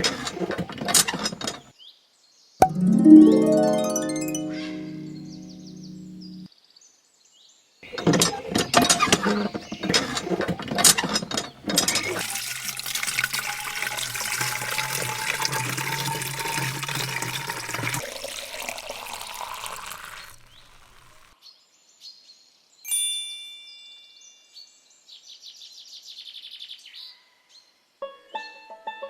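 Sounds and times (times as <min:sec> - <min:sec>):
chime with ringing notes: 0:02.6 - 0:06.5
music: 0:02.6 - 0:06.5, 0:28.1 - 0:29.0
water gushing and splashing: 0:07.9 - 0:21.3.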